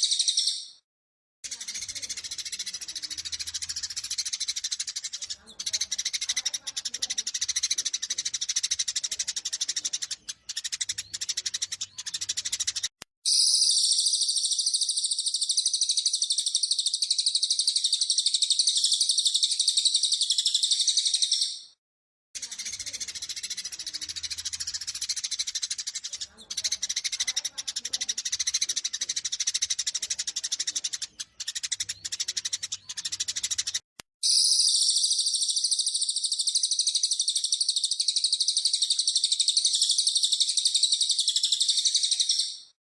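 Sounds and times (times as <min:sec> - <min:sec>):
high fast bird trill: 0:00.0 - 0:00.8, 0:01.5 - 0:21.8, 0:22.4 - 0:42.8
sparrows chirping rapidly: 0:00.0 - 0:00.8, 0:01.4 - 0:21.8, 0:22.4 - 0:42.8.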